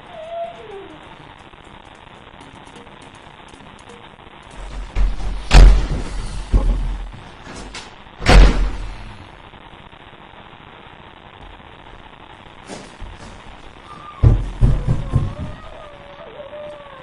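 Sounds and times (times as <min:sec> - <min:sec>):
heavy bangs and thuds: 0:04.6 - 0:07.2, 0:08.2 - 0:09.0, 0:14.2 - 0:15.7.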